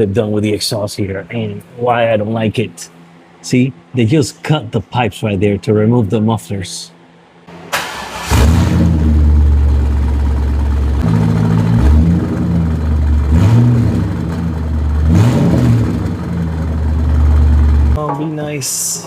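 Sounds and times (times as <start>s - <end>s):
loud car engine revving: 8.2s - 18.0s.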